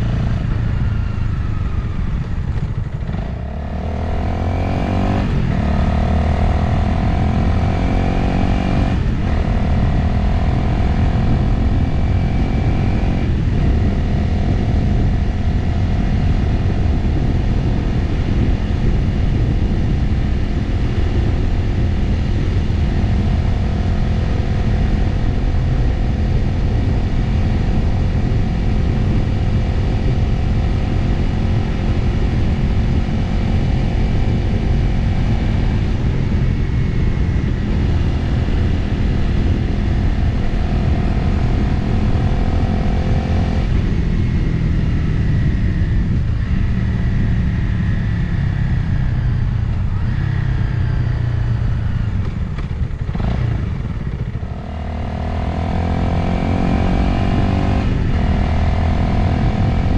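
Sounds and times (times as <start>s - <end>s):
motorcycle engine running: 0.0s - 59.9s
wind noise on microphone: 0.0s - 59.9s.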